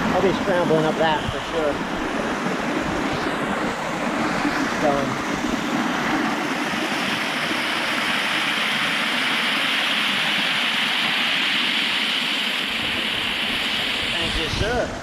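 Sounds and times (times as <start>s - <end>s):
small waterfall splashing: 3.2s - 14.8s.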